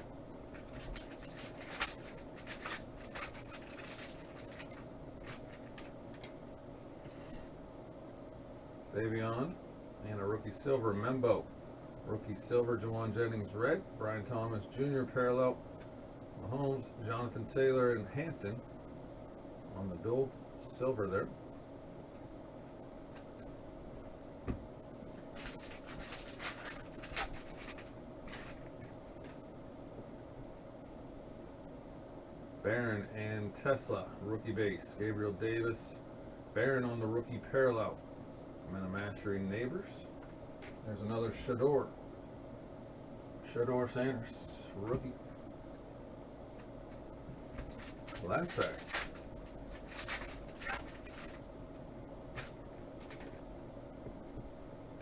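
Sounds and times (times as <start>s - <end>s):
steady hum: 0.0s - 55.0s
foil wrapper crinkling: 0.5s - 6.4s, 25.2s - 29.4s, 47.4s - 51.5s, 52.3s - 53.4s.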